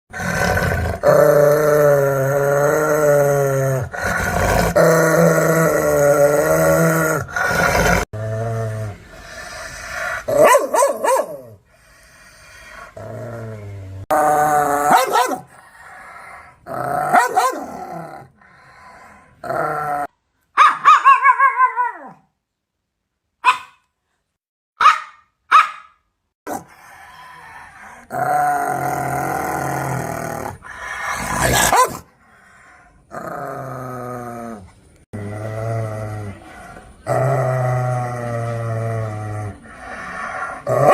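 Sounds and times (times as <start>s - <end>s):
dog growling: 0.1s - 20.1s, 26.5s - 40.9s
large dogs barking: 10.2s - 11.6s, 14.8s - 15.5s, 17.0s - 17.8s, 20.6s - 21.9s, 31.0s - 32.1s, 40.6s - 40.9s.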